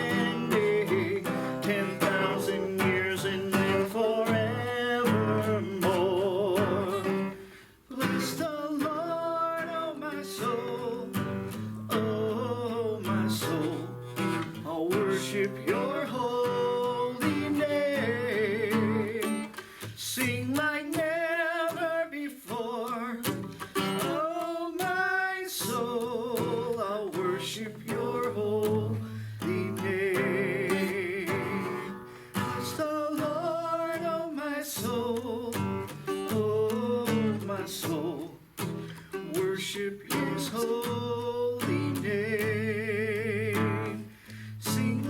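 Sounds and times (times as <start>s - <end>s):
person singing with vibrato: 0.0s - 45.0s
strummed and plucked guitar: 0.0s - 45.0s.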